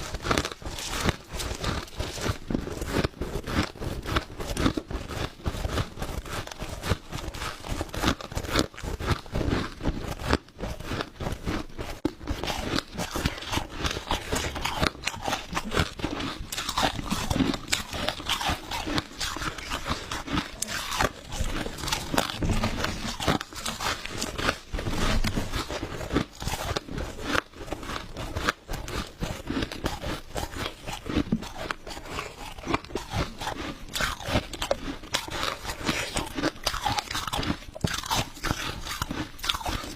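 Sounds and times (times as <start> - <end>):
crushed ice being chewed: 0.0 - 39.9.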